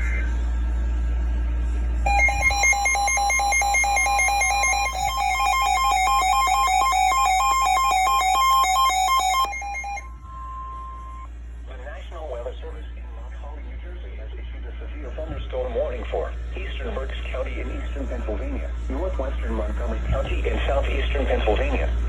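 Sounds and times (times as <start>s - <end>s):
electronic alert tones: 2.1s - 10.1s.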